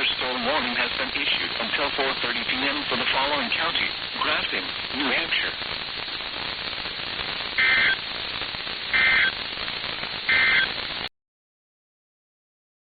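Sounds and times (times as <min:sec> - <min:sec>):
radio static hiss: 0:00.0 - 0:11.1
buzzing data tone bursts: 0:07.6 - 0:08.1, 0:08.9 - 0:09.4, 0:10.2 - 0:11.0.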